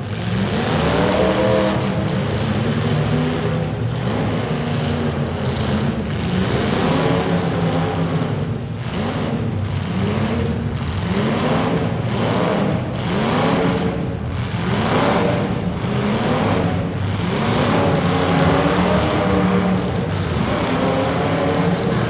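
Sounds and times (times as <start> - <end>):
car engines revving: 0.0 - 22.0.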